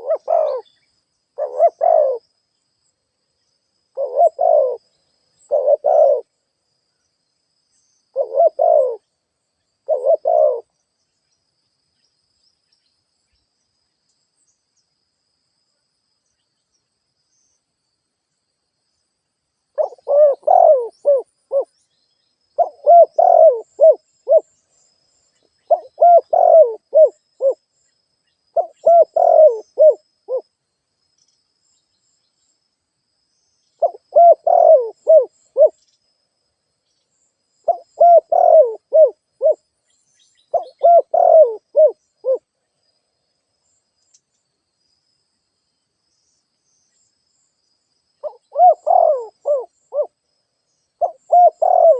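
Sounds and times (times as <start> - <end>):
dove cooing: 0.0 - 0.8, 1.4 - 2.2, 3.9 - 6.3, 8.1 - 9.1, 9.8 - 10.7, 19.8 - 21.7, 22.6 - 24.5, 25.7 - 27.6, 28.6 - 30.4, 33.8 - 35.8, 37.6 - 39.6, 40.5 - 42.5, 48.2 - 50.2, 51.0 - 51.9.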